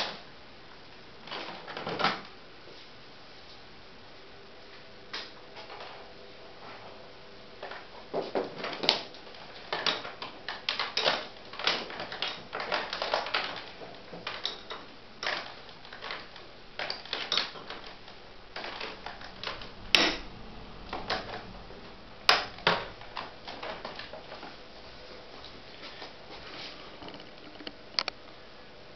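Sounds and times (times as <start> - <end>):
hard objects clicking and knocking: 7.6 - 24.5.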